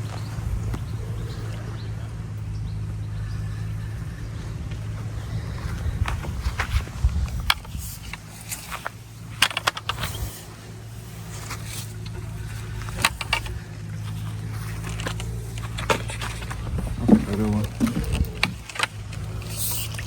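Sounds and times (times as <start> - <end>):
steady low hum: 0.0 - 20.0
sharp clicks and knocks: 7.3 - 10.2, 14.8 - 20.0.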